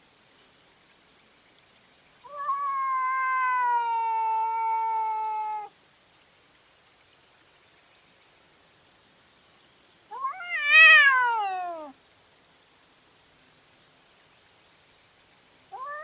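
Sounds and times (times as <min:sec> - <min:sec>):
cat yowling: 0:02.2 - 0:05.7, 0:10.1 - 0:12.0, 0:15.7 - 0:16.0.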